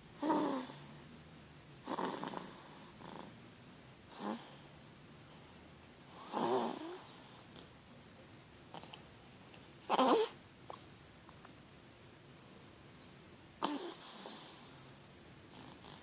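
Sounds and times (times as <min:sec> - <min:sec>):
baby snoring: 0:00.2 - 0:01.0, 0:01.8 - 0:03.4, 0:04.1 - 0:04.7, 0:06.1 - 0:07.4, 0:09.9 - 0:10.4, 0:13.6 - 0:14.9, 0:15.5 - 0:16.0.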